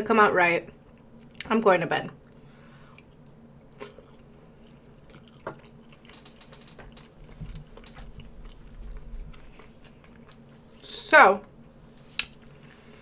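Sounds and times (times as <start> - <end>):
person chewing food: 2.2 - 10.8
small clicks: 6.1 - 7.2.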